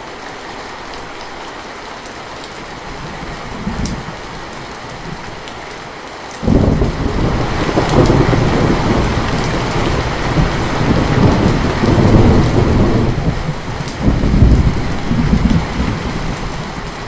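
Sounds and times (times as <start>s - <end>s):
steady rain: 0.0s - 17.0s
thunder rumbling: 2.9s - 5.5s, 6.4s - 17.0s.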